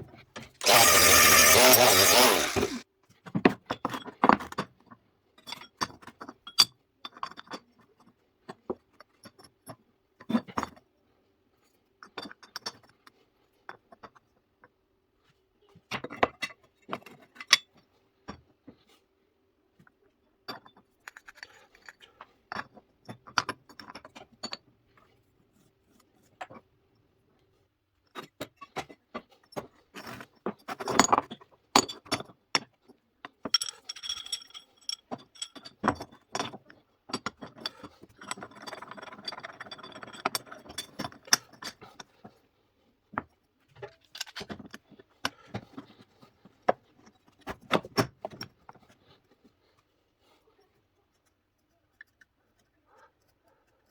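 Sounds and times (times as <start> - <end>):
metal tools clinking and scraping: 0.6 - 2.8, 33.5 - 36.6.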